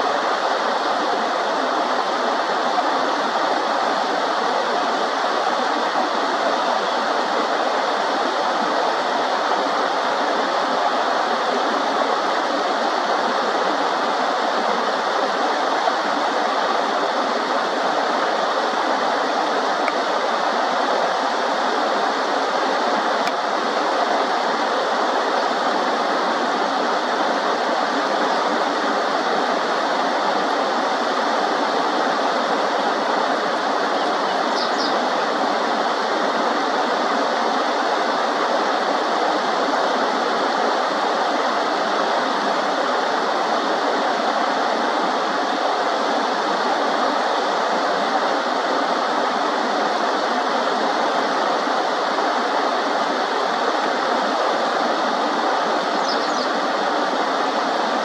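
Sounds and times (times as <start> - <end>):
river water running: 0.0 - 58.0
high chirp: 34.5 - 35.0, 56.0 - 56.5.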